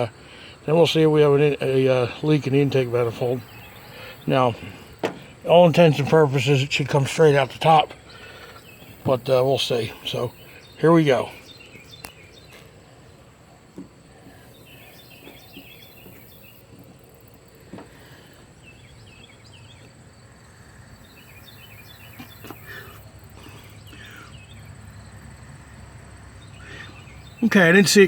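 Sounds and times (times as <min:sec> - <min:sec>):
small birds chirping: 0:00.0 - 0:28.0
faint knocks: 0:04.9 - 0:05.3, 0:17.7 - 0:18.1.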